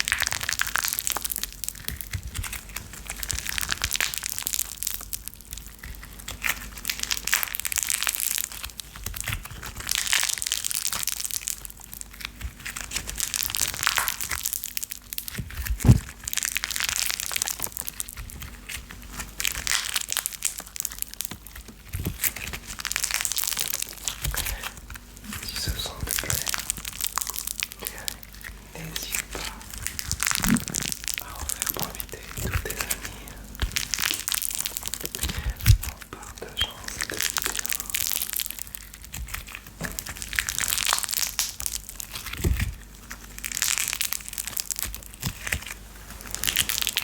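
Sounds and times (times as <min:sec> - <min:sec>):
fireplace fire crackling: 0:13.1 - 0:47.0.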